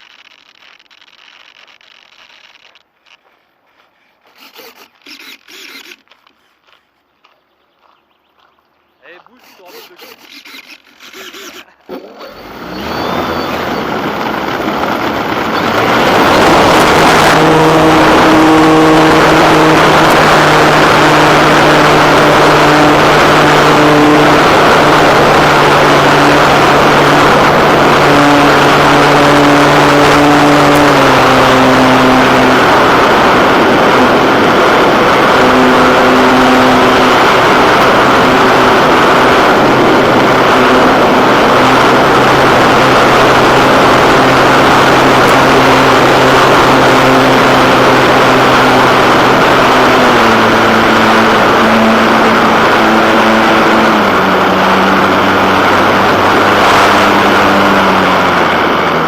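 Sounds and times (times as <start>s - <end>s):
model plane motor hum: 0.0s - 3.3s, 4.2s - 6.8s, 9.2s - 59.0s
wind rush on microphone: 12.4s - 59.0s.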